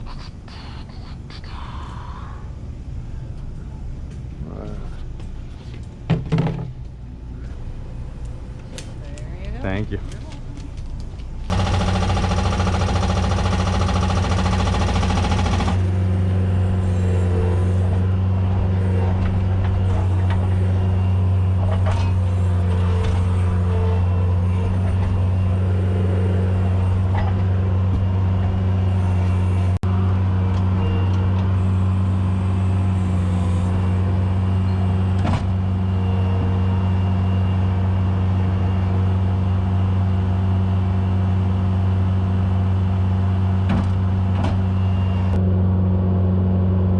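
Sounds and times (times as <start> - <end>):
skid steer engine droning: 10.8 - 46.9.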